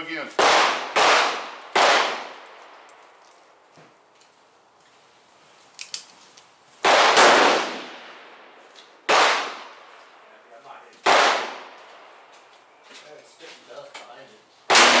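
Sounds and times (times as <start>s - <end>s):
revolver gunshots: 0.4s - 2.5s, 6.8s - 8.4s, 9.1s - 9.9s, 11.0s - 11.8s, 14.7s - 15.0s.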